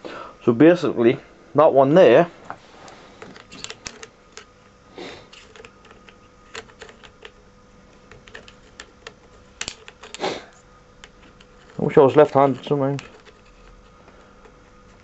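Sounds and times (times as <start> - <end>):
metal rings scraping: 8.2 - 14.0.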